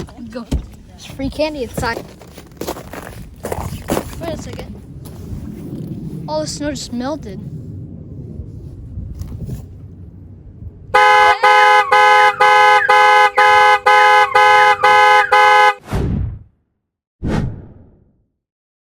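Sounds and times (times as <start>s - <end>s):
horn honking: 11.0s - 15.8s.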